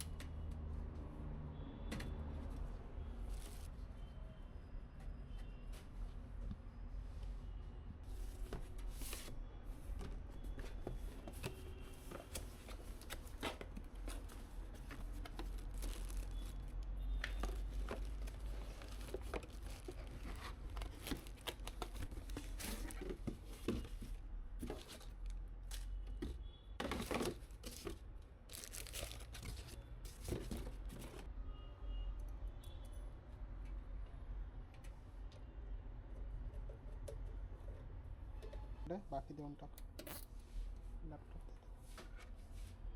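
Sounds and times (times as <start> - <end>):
plastic wrapping tearing and crinkling: 15.0 - 23.0, 28.5 - 29.8.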